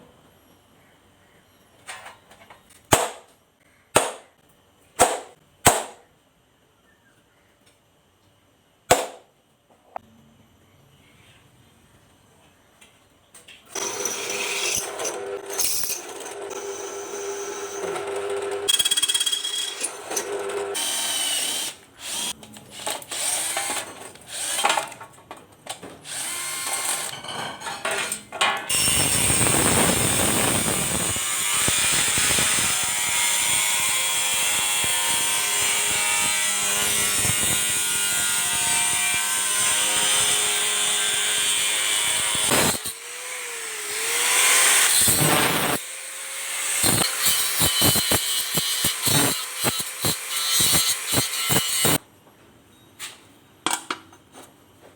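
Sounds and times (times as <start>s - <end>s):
power tool running loudly: 28.7s - 33.8s, 42.4s - 52.0s
drilling bursts: 28.7s - 36.2s, 42.1s - 52.0s.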